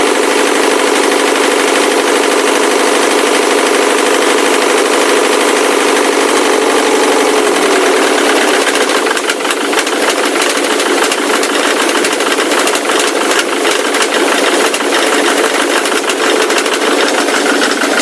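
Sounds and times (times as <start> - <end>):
diesel engine knocking: 0.0 - 18.0.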